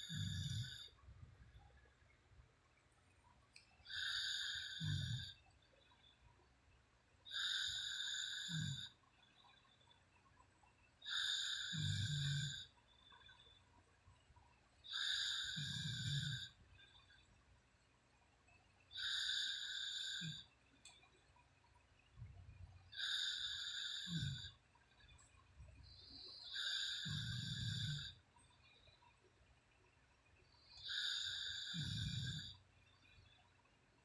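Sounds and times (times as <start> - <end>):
woman snoring with rattle: 0.0 - 1.0, 3.8 - 5.4, 7.3 - 9.6, 11.0 - 13.5, 14.8 - 17.2, 18.9 - 20.5, 22.9 - 24.6, 25.8 - 28.8, 30.6 - 33.4.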